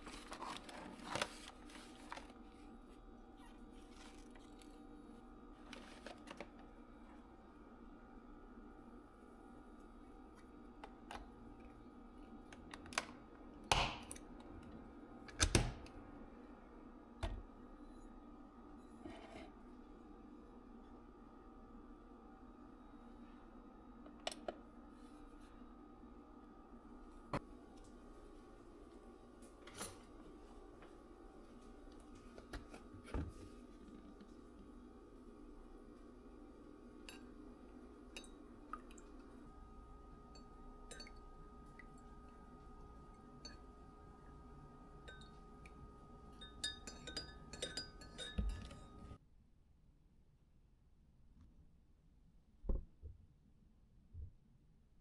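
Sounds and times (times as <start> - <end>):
faint steady hum: 0.0 - 55.0.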